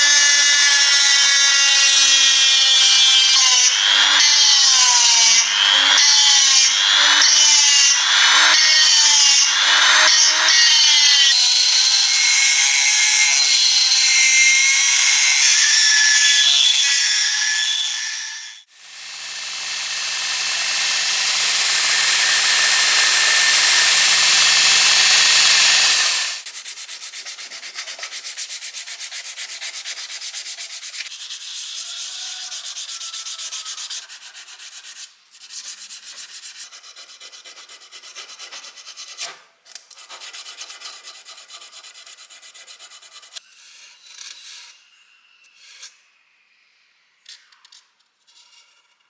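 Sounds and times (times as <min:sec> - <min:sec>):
power tool humming: 0:00.0 - 0:18.0, 0:18.6 - 0:26.4
hand sanding strokes: 0:18.6 - 0:39.4, 0:40.0 - 0:43.4.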